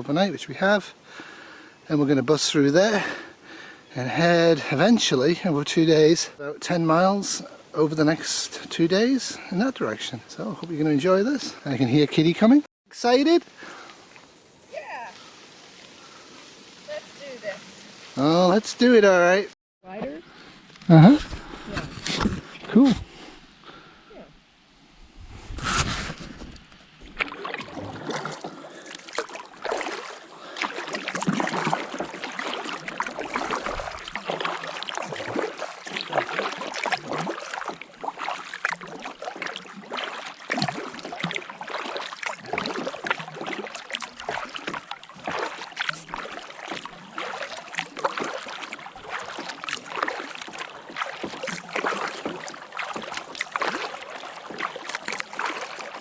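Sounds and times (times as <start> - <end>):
paddle blades splashing: 0.0 - 56.0
water dripping and gurgling: 2.4 - 12.5, 26.6 - 56.0.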